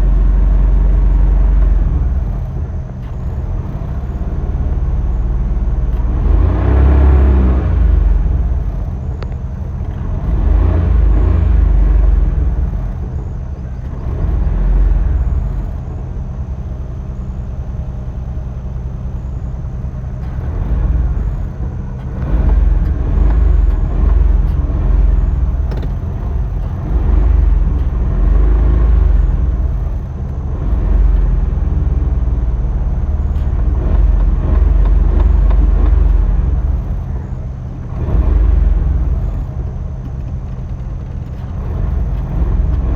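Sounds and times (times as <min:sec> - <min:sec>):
car engine revving: 0:00.0 - 0:42.9.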